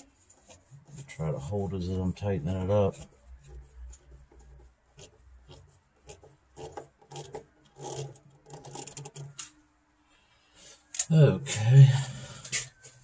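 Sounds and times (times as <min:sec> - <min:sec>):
screw tightened with hand tool: 0:06.6 - 0:09.5.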